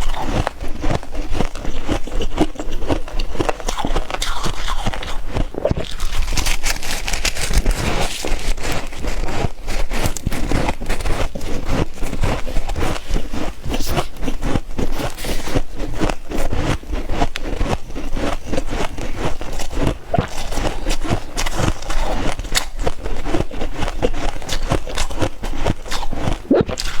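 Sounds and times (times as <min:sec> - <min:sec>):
frost crunching and crackling: 0:00.0 - 0:27.0.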